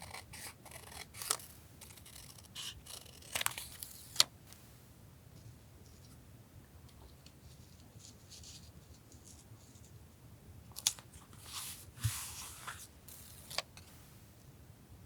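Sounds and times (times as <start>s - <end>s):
scissors snipping paper: 0.0s - 4.2s.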